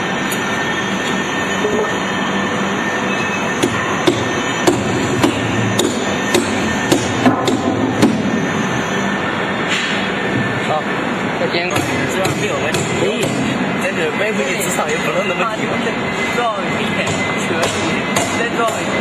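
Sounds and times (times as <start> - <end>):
workshop hum: 0.0 - 19.0
sharp knocks: 3.6 - 8.2.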